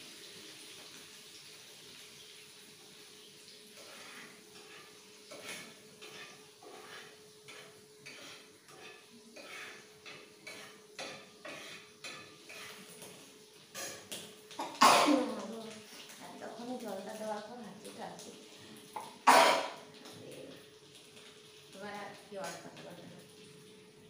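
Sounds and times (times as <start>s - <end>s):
spatula scraping a pan: 3.7s - 14.1s
person sneezing: 19.3s - 19.8s.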